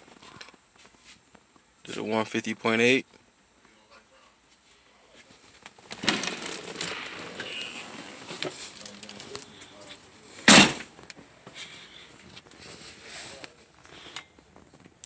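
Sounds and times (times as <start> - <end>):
faint rustling and crackling: 0.0 - 2.2, 3.0 - 15.0
sharp loud knock: 10.5 - 10.9.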